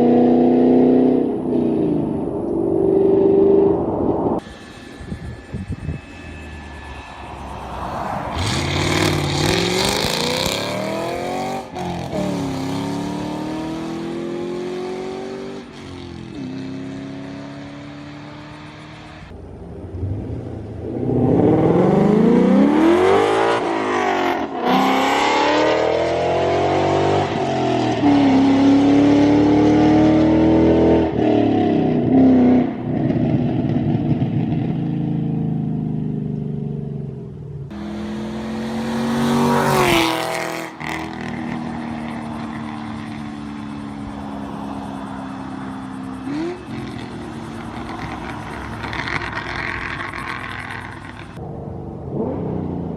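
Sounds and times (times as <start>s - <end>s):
car engine accelerating: 0.0s - 32.5s, 37.7s - 51.4s
car passing by: 4.4s - 19.3s, 37.7s - 51.4s.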